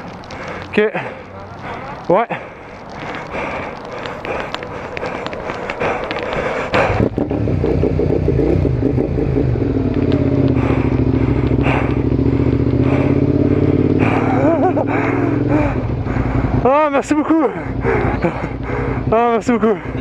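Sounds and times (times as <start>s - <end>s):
motorcycle engine starting and running: 6.0s - 20.0s.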